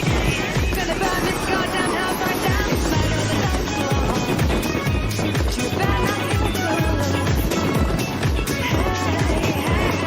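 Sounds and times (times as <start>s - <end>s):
kick drum beat: 0.0s - 10.0s
wavering melody line: 0.8s - 5.3s.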